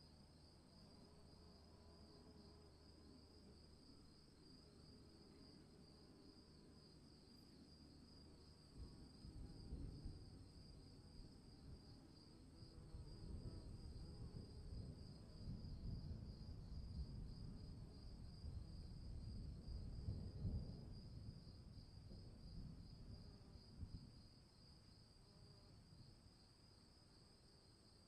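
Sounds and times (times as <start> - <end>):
low rumble of thunder: 8.6 - 11.9, 12.5 - 24.7.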